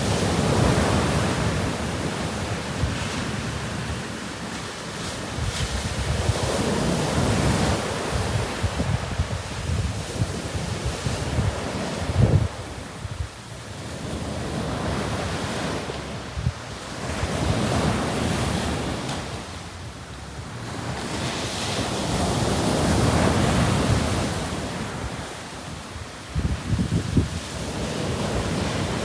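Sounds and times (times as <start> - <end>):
ocean waves breaking: 0.0 - 29.0
wind buffeting microphone: 5.1 - 19.5, 20.4 - 29.0.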